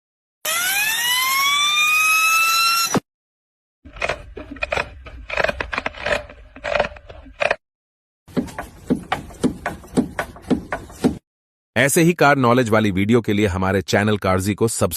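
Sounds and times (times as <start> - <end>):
high squeal rising in pitch: 0.4 - 3.0.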